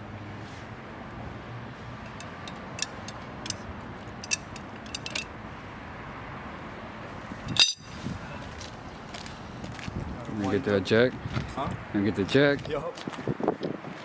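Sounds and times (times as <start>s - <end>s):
steady outdoor hiss: 0.0s - 14.0s
metal tools clinking: 2.0s - 5.4s, 7.4s - 8.0s
metallic clatter: 2.0s - 5.4s, 7.5s - 8.0s.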